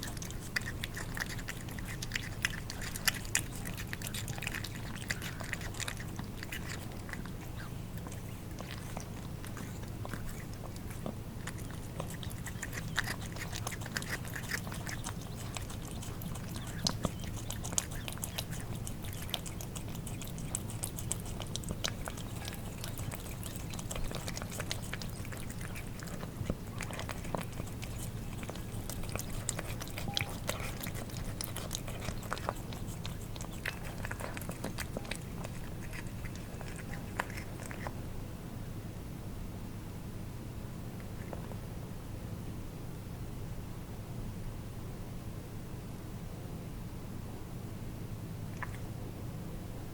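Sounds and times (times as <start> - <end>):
cats eating wet food: 0.0 - 38.3, 41.0 - 41.7, 48.4 - 49.1
steady low hum: 0.0 - 49.9.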